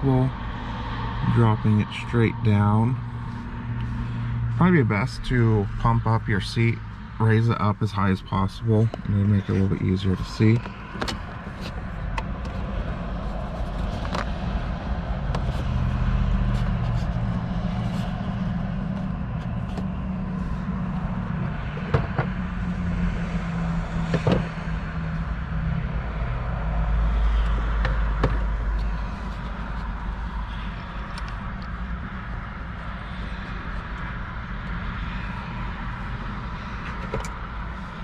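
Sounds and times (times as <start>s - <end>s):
vehicle engine humming: 0.0s - 38.0s.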